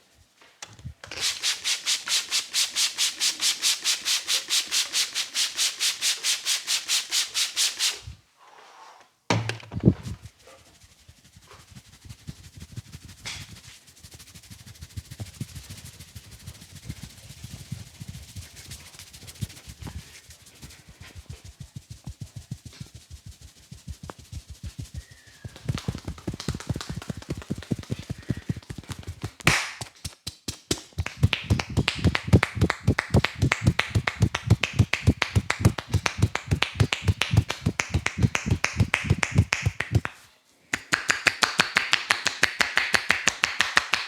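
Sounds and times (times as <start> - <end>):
hands rubbing head: 1.2 - 8.0, 10.1 - 40.2, 40.8 - 44.0
thump: 9.3 - 10.0
soft quick pats: 17.2 - 40.2.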